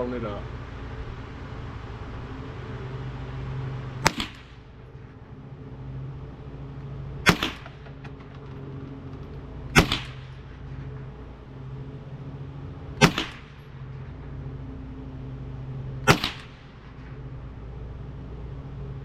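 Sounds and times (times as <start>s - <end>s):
low hum: 0.0s - 19.0s
rifle shots with echo: 4.0s - 4.7s, 7.2s - 8.7s, 9.7s - 10.5s, 13.0s - 13.7s, 16.0s - 17.2s.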